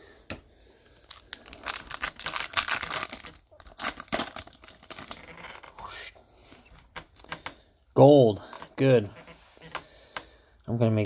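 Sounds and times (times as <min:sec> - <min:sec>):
wrapper crinkling and tearing: 0:01.0 - 0:05.4.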